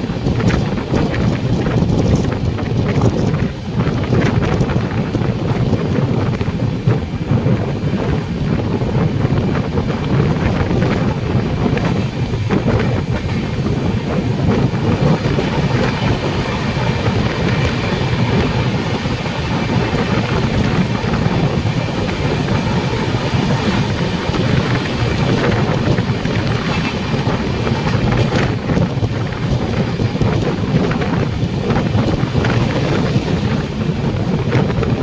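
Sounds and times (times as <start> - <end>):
train wheels rumbling on rails: 0.0 - 35.0
wind buffeting microphone: 0.0 - 35.0.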